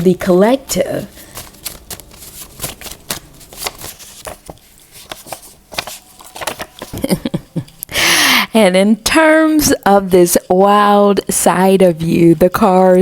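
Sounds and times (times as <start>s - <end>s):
cards shuffling: 1.0s - 7.1s.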